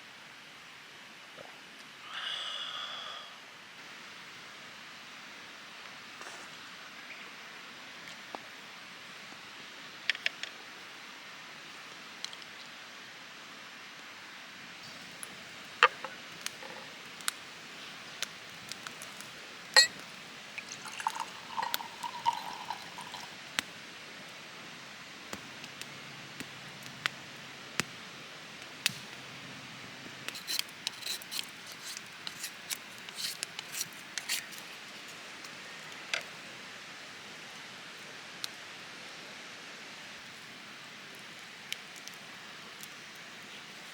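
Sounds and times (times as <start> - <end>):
steady background hiss: 0.0 - 43.9
tableware clinking: 19.8 - 20.0.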